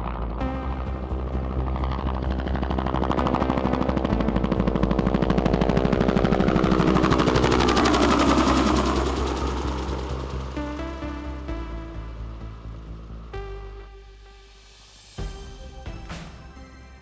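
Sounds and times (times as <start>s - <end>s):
downward pitch sweep: 0.0s - 12.4s
low steady hum: 0.0s - 13.9s.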